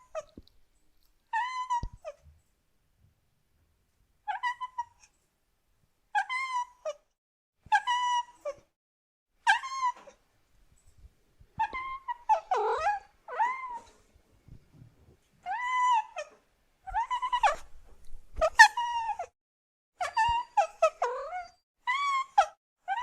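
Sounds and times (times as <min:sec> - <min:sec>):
cat meowing: 0:11.6 - 0:13.9.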